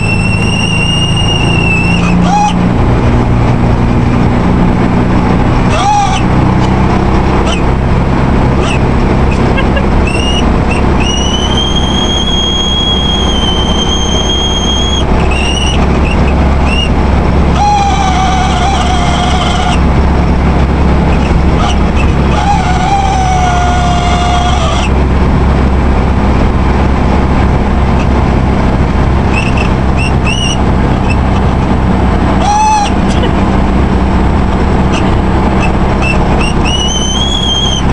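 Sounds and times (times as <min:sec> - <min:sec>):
car engine droning: 0:00.0 - 0:37.9
road noise: 0:00.0 - 0:37.9
speedometer squealing: 0:00.0 - 0:37.9.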